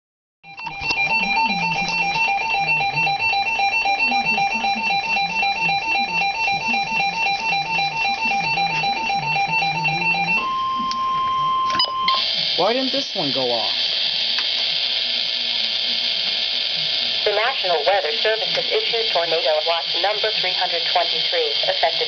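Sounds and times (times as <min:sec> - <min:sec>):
two-tone beeping pulses: 0:00.4 - 0:12.3.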